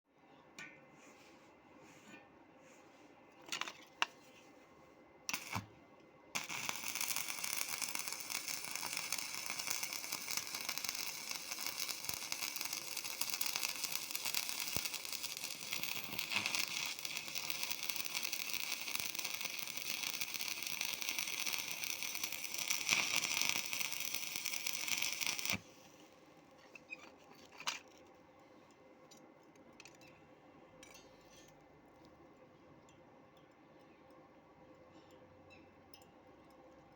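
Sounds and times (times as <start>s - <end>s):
welding arc crackling: 5.3s - 5.7s, 6.4s - 25.6s.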